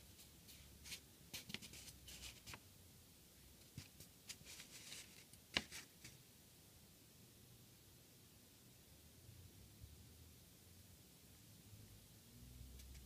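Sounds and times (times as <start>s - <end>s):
paper sheets rustling: 0.1s - 2.6s, 3.6s - 6.2s.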